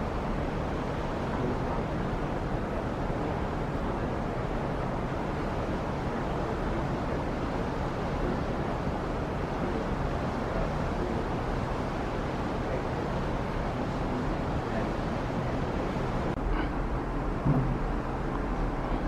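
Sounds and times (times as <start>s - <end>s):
water rushing: 0.0s - 19.0s
boat engine running: 8.0s - 19.0s.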